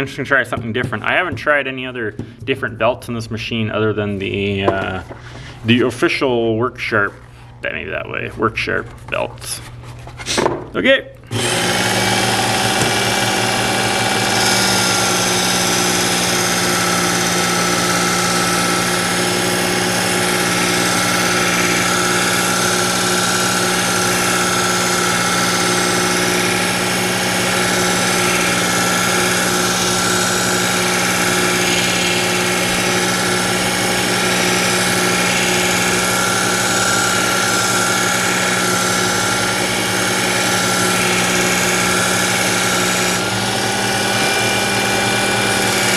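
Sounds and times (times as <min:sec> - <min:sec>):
belt sharpener grinding knife: 0:11.3 - 0:45.9
motor whine: 0:11.3 - 0:45.9.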